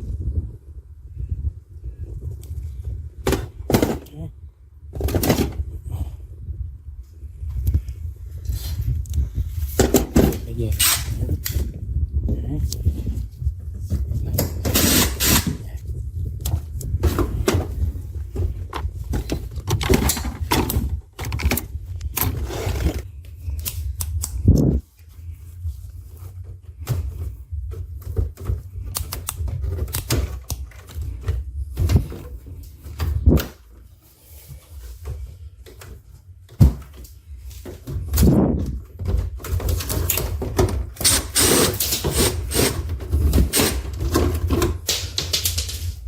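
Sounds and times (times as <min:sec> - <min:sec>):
steady low rumble: 0:00.0 - 0:41.5
clicks and knocks of hard parts: 0:18.7 - 0:22.4.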